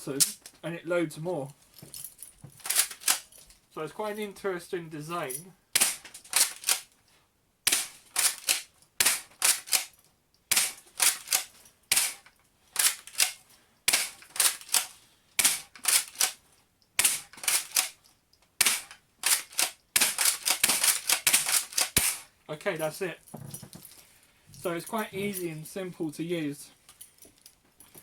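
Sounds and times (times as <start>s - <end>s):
airsoft gun cocking and firing: 2.6s - 3.3s, 5.8s - 6.9s, 7.7s - 9.9s, 10.5s - 16.4s, 17.0s - 18.0s, 18.6s - 22.3s.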